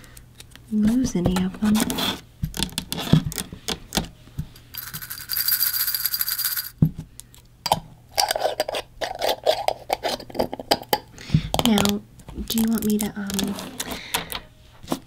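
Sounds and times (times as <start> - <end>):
teeth clinking in a jar: 4.7 - 6.8.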